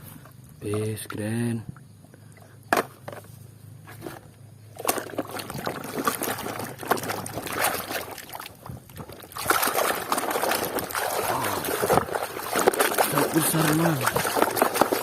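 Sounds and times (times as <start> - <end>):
water sloshing and splashing: 3.9 - 15.0.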